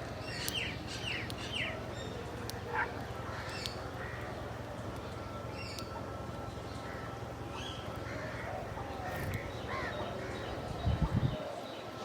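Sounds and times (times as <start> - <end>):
birds calling: 0.0 - 12.0.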